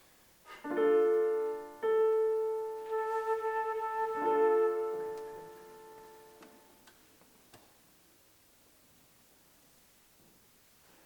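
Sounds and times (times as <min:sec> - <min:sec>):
sustained flute chords: 0:02.8 - 0:06.4.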